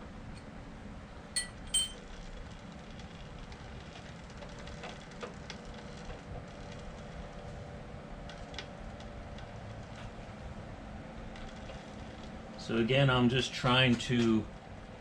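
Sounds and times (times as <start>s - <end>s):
metal clinks: 1.4s - 2.0s.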